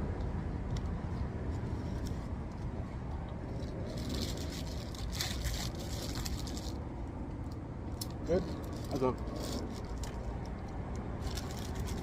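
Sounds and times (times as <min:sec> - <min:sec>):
vehicle rumble: 0:00.0 - 0:12.0
crinkling and rustling: 0:03.5 - 0:06.8, 0:11.2 - 0:12.0.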